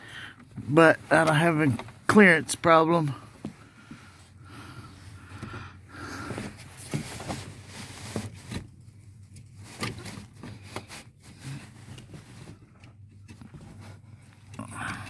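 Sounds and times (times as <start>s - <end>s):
rubbing and rustling: 6.0s - 14.6s.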